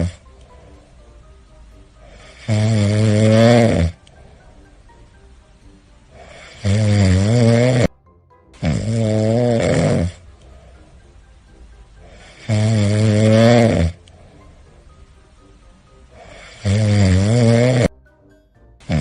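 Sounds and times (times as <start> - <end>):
cat snoring: 0.0 - 0.3, 2.0 - 4.6, 6.1 - 7.9, 8.6 - 10.8, 12.0 - 14.5, 16.1 - 18.0
quiet breathing: 0.0 - 8.0, 8.6 - 17.9.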